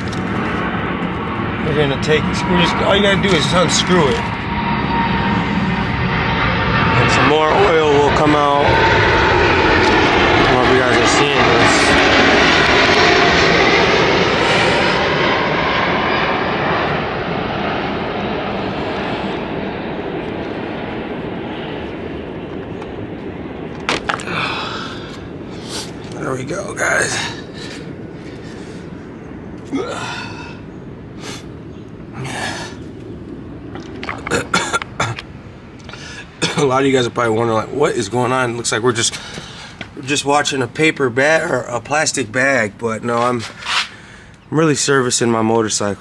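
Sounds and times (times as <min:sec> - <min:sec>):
man breathing heavily: 0:14.4 - 0:15.1, 0:24.2 - 0:26.1, 0:27.1 - 0:33.0, 0:35.9 - 0:36.4, 0:39.1 - 0:40.0, 0:43.7 - 0:44.4.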